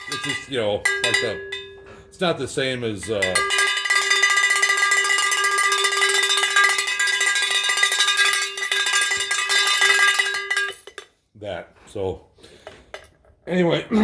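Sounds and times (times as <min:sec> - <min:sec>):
cowbell beaten rapidly: 0:00.0 - 0:02.4, 0:03.0 - 0:11.0.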